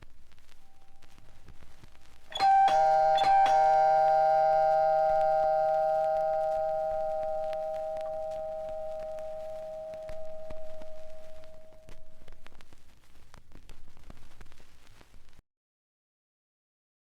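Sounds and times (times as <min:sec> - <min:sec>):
two-note chime: 0:02.3 - 0:12.2.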